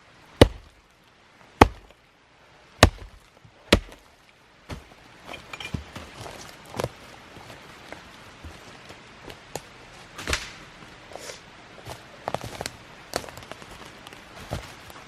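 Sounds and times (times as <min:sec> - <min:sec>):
dry sticks and leaves cracking: 0:04.7 - 0:10.7, 0:11.8 - 0:15.0.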